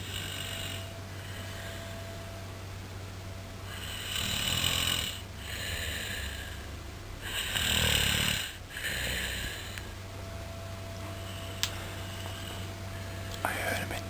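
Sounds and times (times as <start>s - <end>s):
man snoring: 0.0s - 2.2s, 3.7s - 10.0s
breathy exhale: 0.0s - 2.4s, 3.7s - 10.0s, 11.2s - 13.8s.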